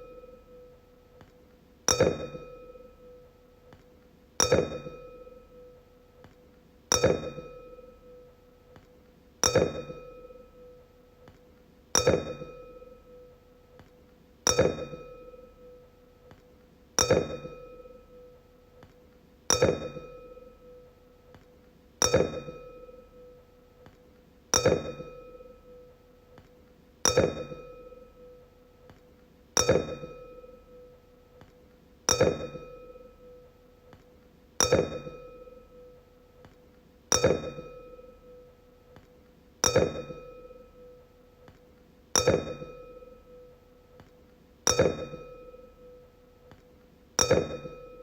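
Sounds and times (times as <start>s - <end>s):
wine glass ringing when struck: 1.9s - 2.9s, 17.0s - 18.2s, 27.1s - 28.4s, 32.1s - 33.4s, 34.6s - 35.8s, 37.1s - 38.4s, 39.6s - 40.9s, 42.2s - 43.4s, 44.7s - 46.0s, 47.2s - 48.0s.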